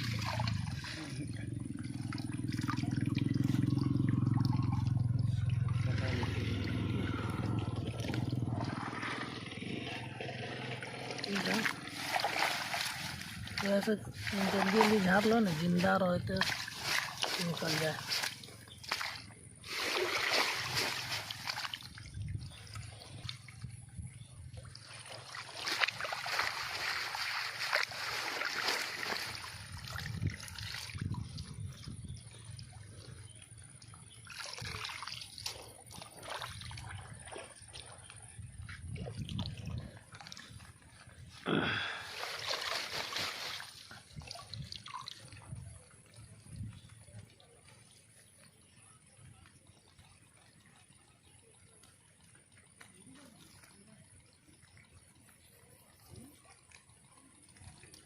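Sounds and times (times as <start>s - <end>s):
low steady rumble: 0.0s - 25.5s, 29.1s - 34.8s
water dripping and splashing: 0.0s - 58.0s.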